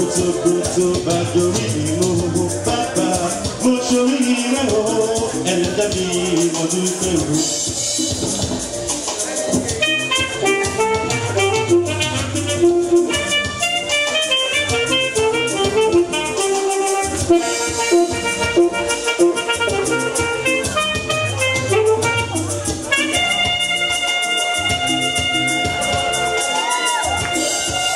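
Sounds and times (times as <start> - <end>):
instrumental melody over drums: 0.0 - 27.9.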